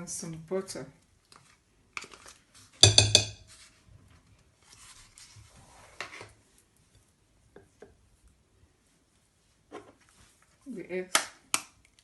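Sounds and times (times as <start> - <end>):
sharp knock: 2.8 - 3.4
utensil clattering against bowl: 2.8 - 3.4.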